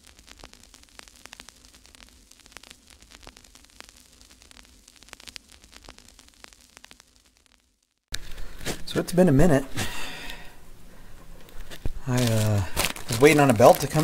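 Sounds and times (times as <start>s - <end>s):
sharp clicks and pops: 0.0s - 8.9s, 11.4s - 14.0s
static hiss: 0.0s - 14.0s.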